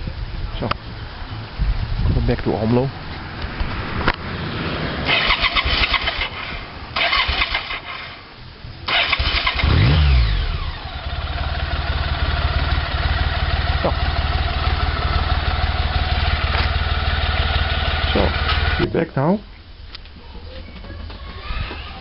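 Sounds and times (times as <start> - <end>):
motorcycle engine revving: 3.6 - 8.2, 8.8 - 18.9
motorcycle engine cranking: 5.1 - 8.1, 8.8 - 13.0, 13.7 - 18.8
motorcycle engine idling: 8.8 - 18.9.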